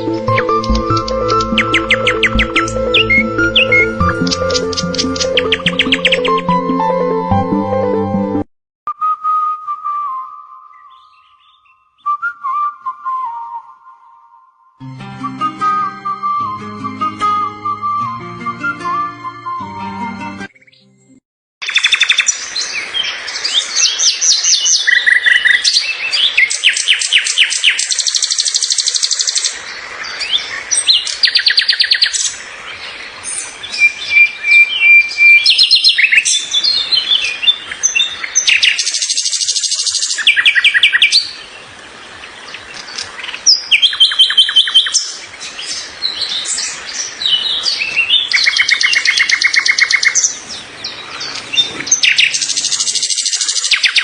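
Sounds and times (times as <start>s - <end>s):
songbirds trilling and chirping: 0.0s - 6.5s, 21.6s - 54.0s.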